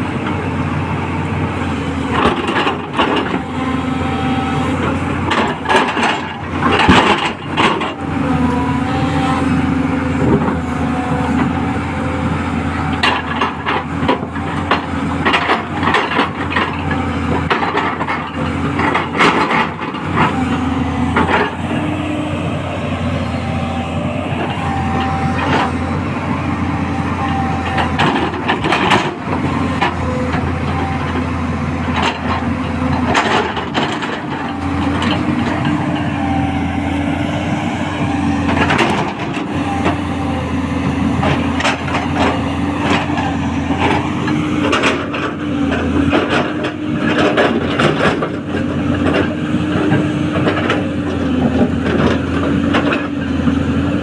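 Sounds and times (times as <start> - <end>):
excavator engine and hydraulics hum: 0.0 - 54.0
machine knocks and clanks: 4.7 - 8.5, 27.4 - 35.8.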